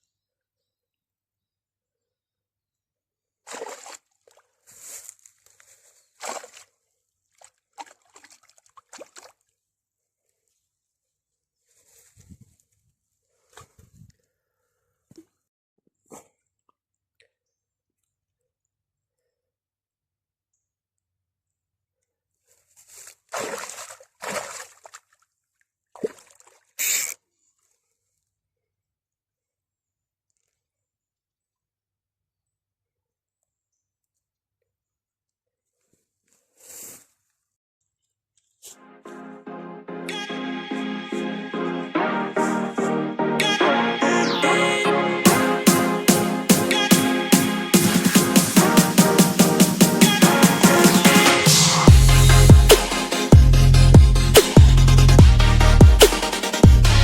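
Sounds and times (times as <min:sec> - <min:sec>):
fish splashing in water: 0:03.5 - 0:04.5, 0:06.2 - 0:06.7, 0:07.4 - 0:09.4, 0:23.3 - 0:25.2, 0:26.0 - 0:27.1.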